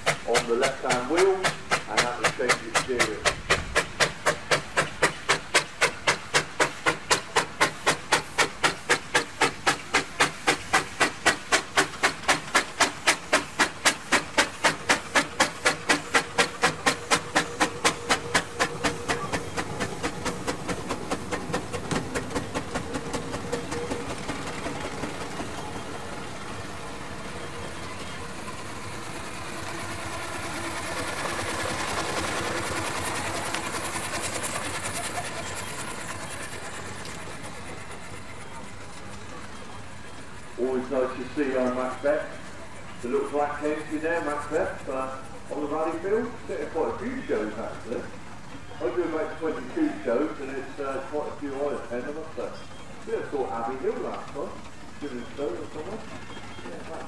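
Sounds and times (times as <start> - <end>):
machinery knocking rhythmically: 0.0 - 25.6
steady mechanical sound: 0.0 - 57.0.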